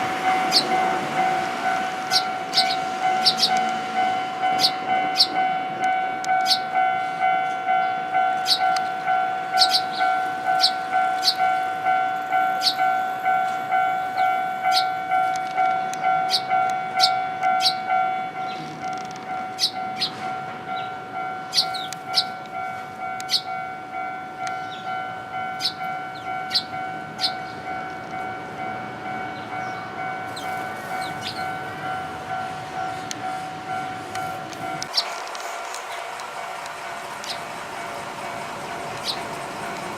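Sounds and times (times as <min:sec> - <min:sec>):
level-crossing two-tone bell: 0:00.0 - 0:35.0
sparrows chirping: 0:00.2 - 0:01.0, 0:01.8 - 0:05.5, 0:06.3 - 0:07.1, 0:07.7 - 0:18.7, 0:19.4 - 0:22.4, 0:23.2 - 0:23.6, 0:24.4 - 0:27.8, 0:29.2 - 0:32.0, 0:37.1 - 0:37.6, 0:38.8 - 0:39.9.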